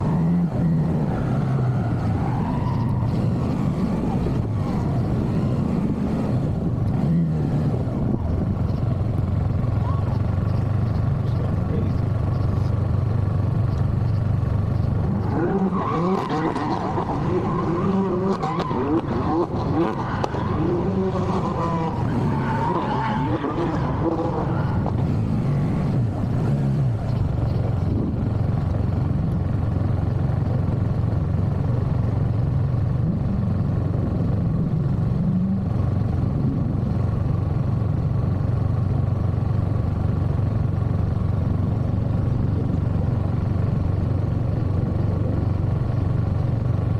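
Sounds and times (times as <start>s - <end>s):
car tires screeching: 0.0s - 12.8s, 13.7s - 28.0s
car engine running: 0.0s - 46.9s.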